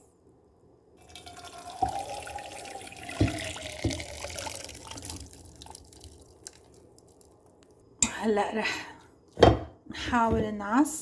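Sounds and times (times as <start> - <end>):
liquid pouring into strainer: 1.0 - 7.5.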